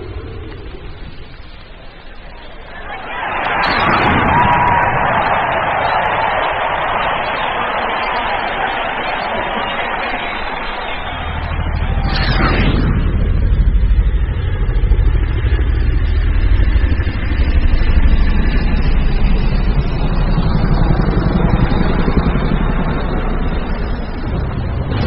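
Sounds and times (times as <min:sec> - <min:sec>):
engine running: 0:09.5 - 0:25.0.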